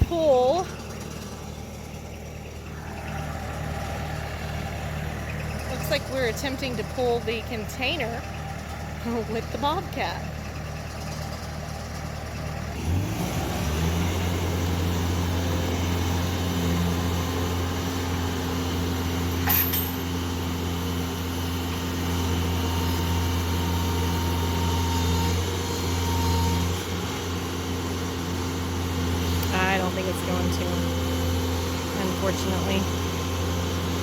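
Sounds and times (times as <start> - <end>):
loader engine revving hard: 12.2 - 34.0.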